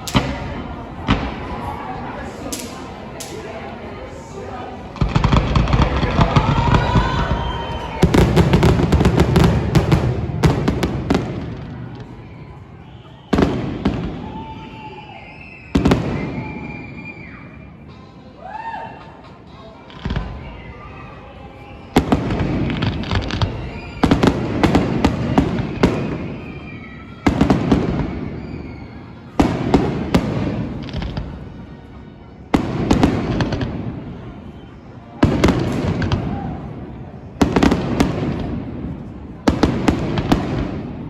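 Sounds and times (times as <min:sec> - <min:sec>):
fireworks bangs: 0:00.0 - 0:03.4, 0:04.8 - 0:17.2, 0:21.6 - 0:31.8, 0:32.5 - 0:41.0
fireworks crackling: 0:00.0 - 0:17.2, 0:19.9 - 0:31.8, 0:32.5 - 0:41.0
fireworks rumble: 0:00.0 - 0:17.9, 0:19.3 - 0:41.0
faint whistles: 0:05.8 - 0:08.3, 0:11.4 - 0:17.9, 0:20.1 - 0:32.3, 0:33.0 - 0:37.2.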